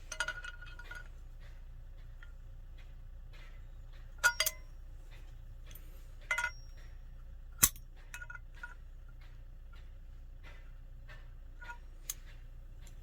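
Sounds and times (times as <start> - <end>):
small metal parts clinking: 0.0 - 1.2, 4.2 - 4.7, 5.7 - 6.8
low steady hum: 0.0 - 13.0.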